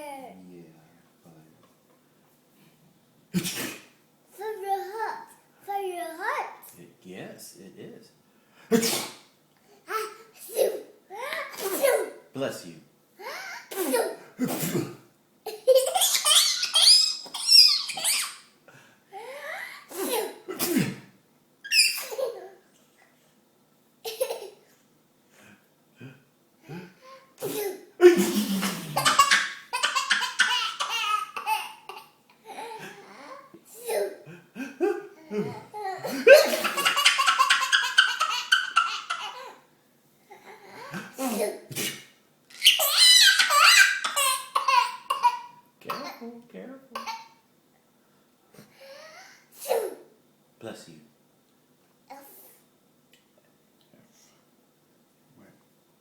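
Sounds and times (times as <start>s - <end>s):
child squealing and giggling: 15.7s - 18.5s, 21.6s - 22.6s, 42.5s - 45.0s
high-pitched laughter: 42.6s - 44.5s.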